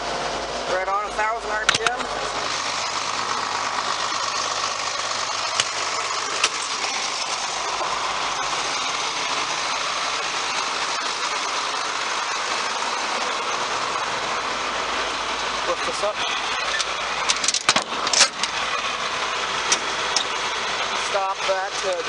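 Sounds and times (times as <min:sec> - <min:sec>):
tractor diesel engine idling: 0:00.0 - 0:22.0.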